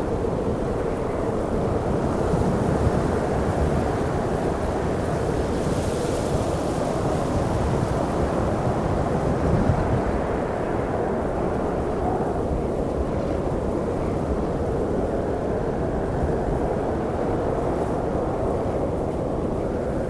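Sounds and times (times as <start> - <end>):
snowstorm wind roaring: 0.0 - 20.0.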